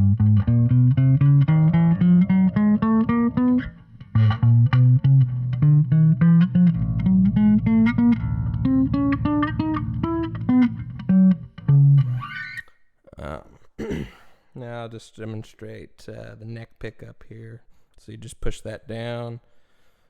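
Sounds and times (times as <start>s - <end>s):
electric bass rising notes: 0.0s - 12.1s.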